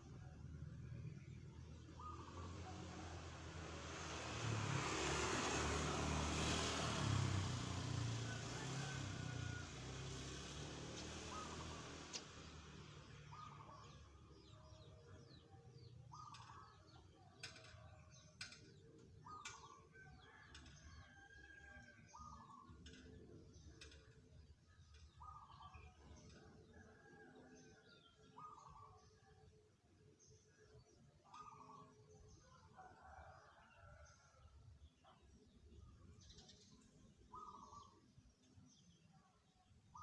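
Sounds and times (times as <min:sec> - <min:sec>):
vehicle passing: 0:01.8 - 0:14.3.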